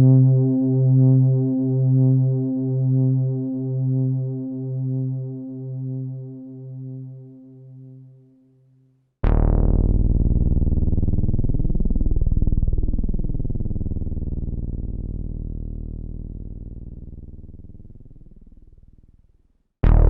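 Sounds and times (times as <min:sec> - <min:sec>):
pulsing synthesizer bass note: 0:09.2 - 0:18.8
deep synthesizer bass note phasing: 0:09.2 - 0:18.9.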